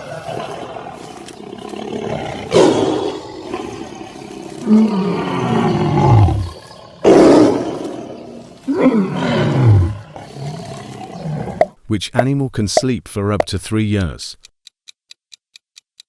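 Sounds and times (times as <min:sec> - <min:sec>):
big cat roaring: 0:00.0 - 0:11.8.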